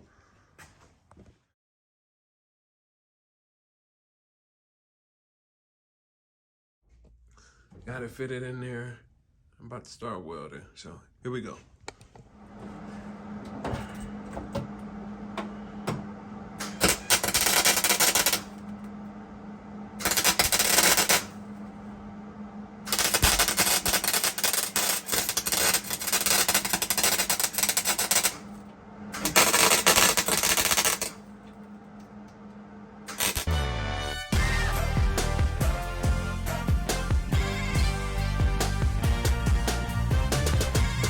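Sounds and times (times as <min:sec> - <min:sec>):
steady low hum: 0:07.1 - 0:33.7
welder crackling: 0:16.6 - 0:19.0, 0:20.0 - 0:21.9, 0:22.8 - 0:31.6, 0:33.0 - 0:33.6.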